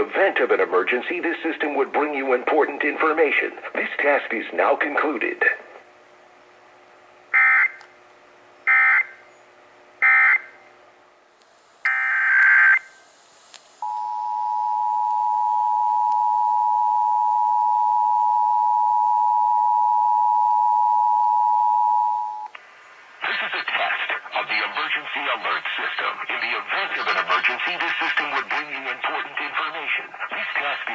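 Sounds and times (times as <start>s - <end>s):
two-tone attention signal: 13.8s - 22.5s.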